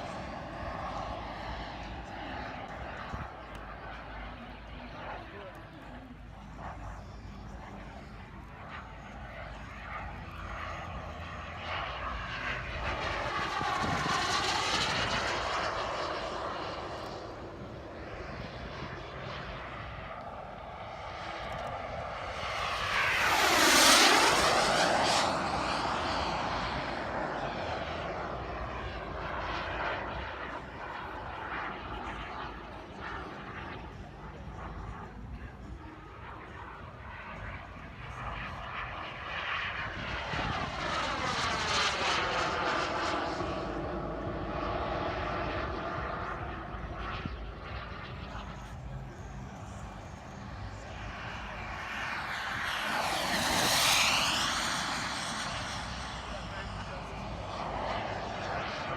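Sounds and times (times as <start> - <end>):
model jet turbine flying past: 0.0 - 58.9.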